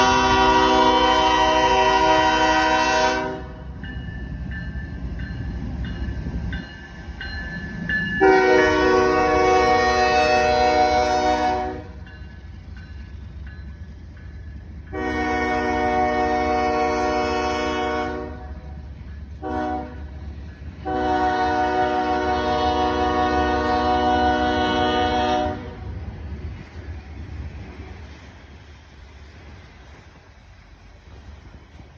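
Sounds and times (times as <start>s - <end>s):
locomotive air horn: 0.0s - 3.6s, 8.2s - 12.0s, 14.9s - 18.7s, 19.4s - 20.2s, 20.8s - 25.9s
low train rumble: 0.0s - 31.9s.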